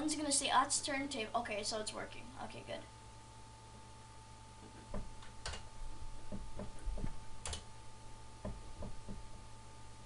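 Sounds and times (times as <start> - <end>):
electrical hum with faint whine: 0.0 - 10.0
computer mouse clicking: 4.6 - 5.7, 6.3 - 7.7.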